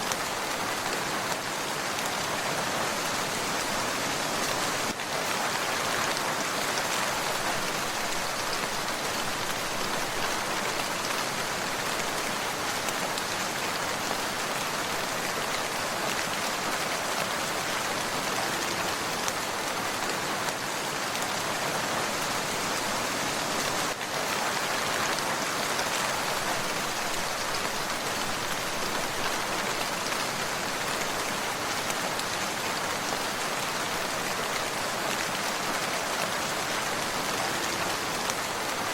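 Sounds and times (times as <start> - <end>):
steady rain falling: 0.0 - 38.9.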